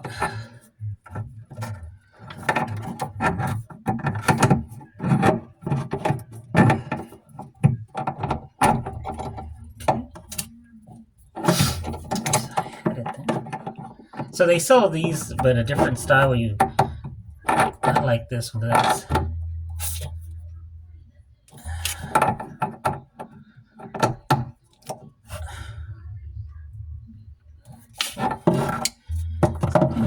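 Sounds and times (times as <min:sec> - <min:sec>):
hand tool clicking on pipe fittings: 0:00.0 - 0:20.1, 0:21.5 - 0:25.1, 0:27.9 - 0:30.0.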